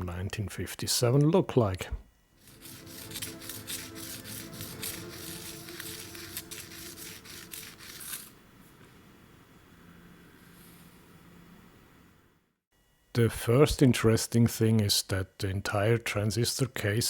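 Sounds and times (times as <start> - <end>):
faint hum: 0.0 - 17.0
background music: 2.4 - 8.4.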